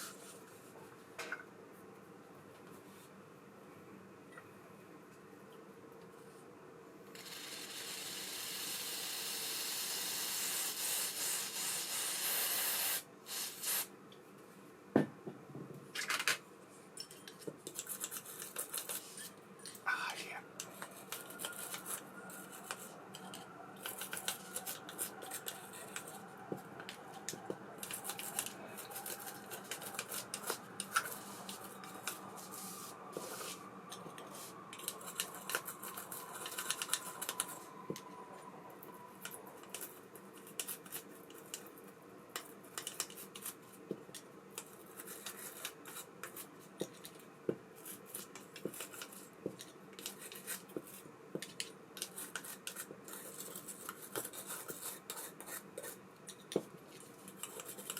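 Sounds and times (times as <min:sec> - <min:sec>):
faint thin whine: 0:16.7 - 0:43.8.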